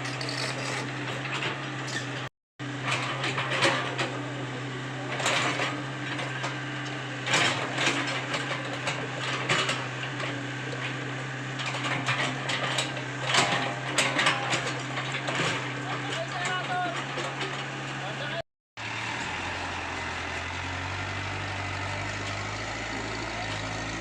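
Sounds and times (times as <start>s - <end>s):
metal clanks and rattles: 0.0s - 2.3s, 2.9s - 4.2s, 5.1s - 11.0s, 11.6s - 17.8s
excavator diesel engine humming: 0.0s - 24.0s.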